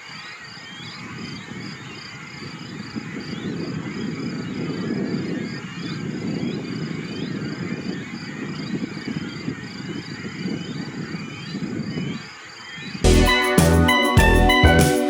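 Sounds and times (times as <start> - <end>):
music: 13.0 - 15.0.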